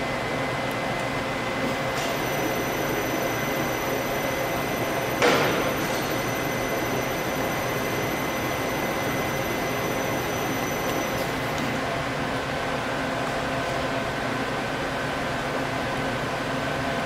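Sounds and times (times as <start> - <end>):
lower steady whine: 0.0 - 15.3
lathe mechanical hum: 0.0 - 17.0
thin high whines: 2.0 - 11.8.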